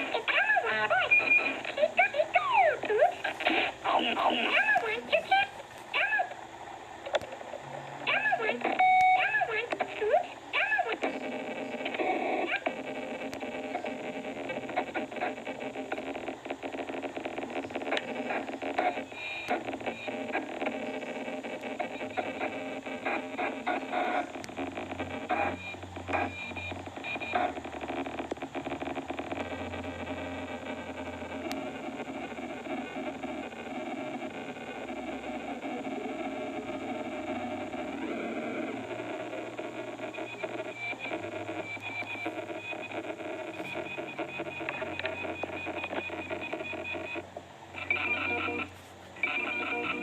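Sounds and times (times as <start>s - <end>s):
glitching electronic toy tones: 0.0s - 5.4s, 8.1s - 50.0s.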